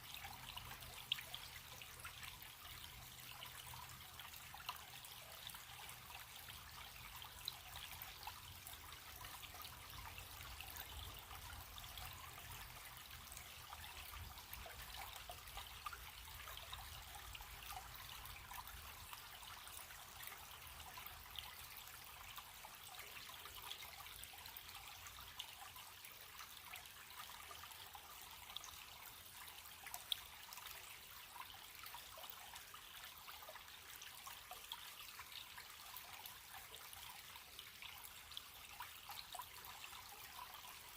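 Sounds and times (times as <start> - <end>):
stream trickling: 0.0 - 40.9.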